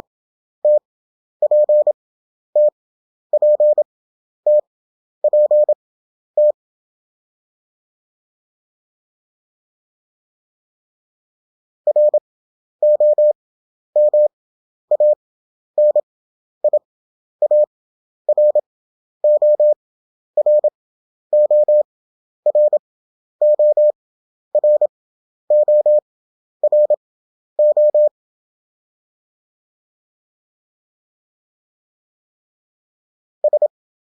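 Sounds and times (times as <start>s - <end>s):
morse code beeps: 1.5s - 1.9s, 3.4s - 3.8s, 5.3s - 5.8s, 11.9s - 12.2s, 12.8s - 13.4s, 15.0s - 15.2s, 15.8s - 16.0s, 17.4s - 17.7s, 19.3s - 19.8s, 20.4s - 20.7s, 21.4s - 21.8s, 22.5s - 22.8s, 23.4s - 24.0s, 24.6s - 24.9s, 25.5s - 26.0s, 26.6s - 27.0s, 27.6s - 28.1s, 33.4s - 33.7s.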